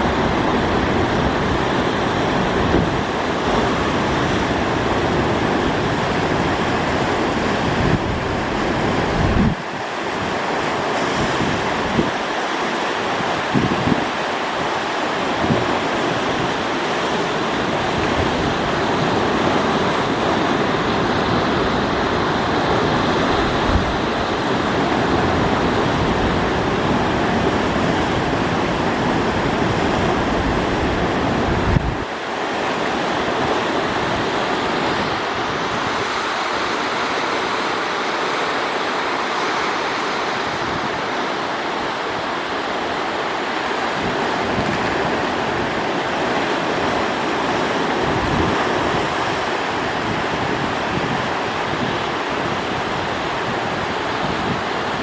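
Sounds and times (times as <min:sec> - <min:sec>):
wind rumbling on microphone: 0:00.0 - 0:10.5, 0:11.1 - 0:12.4, 0:13.2 - 0:14.2, 0:17.8 - 0:32.2, 0:43.8 - 0:55.0
rushing water: 0:00.0 - 0:55.0.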